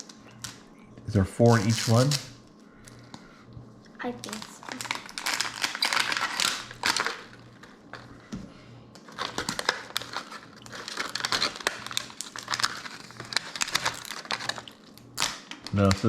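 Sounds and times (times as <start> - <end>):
plastic packaging crinkling: 1.4 - 2.3, 4.2 - 8.2, 9.0 - 16.0.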